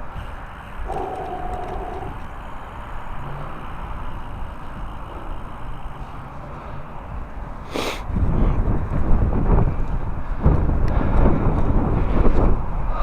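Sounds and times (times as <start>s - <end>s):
road noise: 0.0s - 13.0s
wind buffeting microphone: 0.0s - 13.0s.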